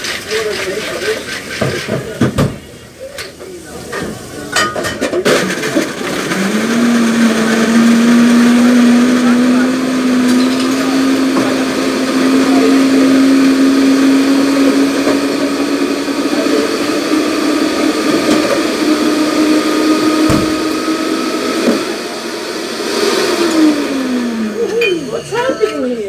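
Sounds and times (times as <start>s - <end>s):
blender motor running: 5.3s - 25.6s.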